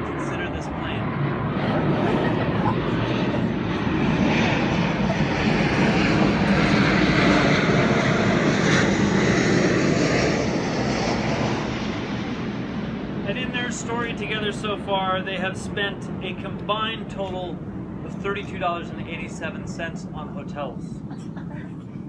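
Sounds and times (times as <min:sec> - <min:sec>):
airplane passing overhead: 0:00.0 - 0:22.0.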